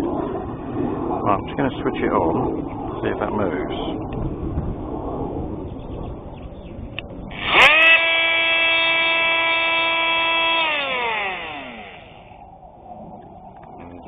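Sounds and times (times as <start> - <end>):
oscillating multi-tool whining: 7.0 - 12.6.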